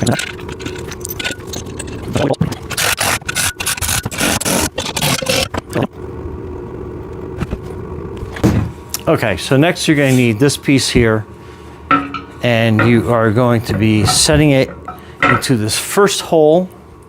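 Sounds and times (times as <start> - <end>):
metal parts clanking and scraping: 0.0 - 5.6, 11.9 - 15.8.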